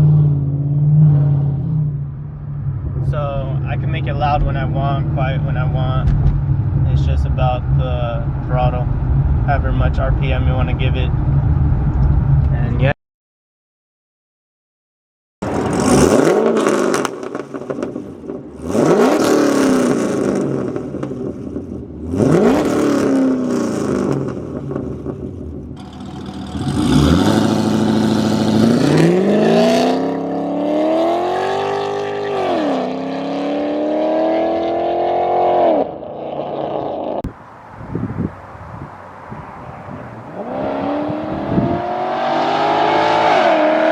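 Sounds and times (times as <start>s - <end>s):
car engine throttle blips: 15.4s - 32.9s
car engine accelerating hard: 15.4s - 37.3s, 39.9s - 43.9s.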